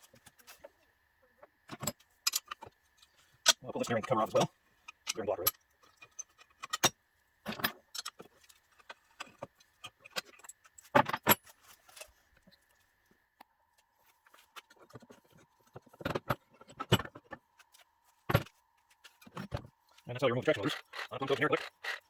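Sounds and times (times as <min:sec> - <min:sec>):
small metal parts clinking: 0:01.7 - 0:06.9.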